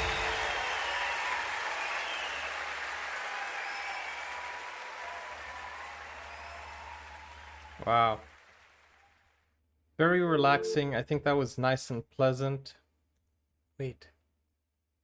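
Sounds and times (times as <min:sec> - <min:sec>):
audience applauding: 0:00.0 - 0:09.5.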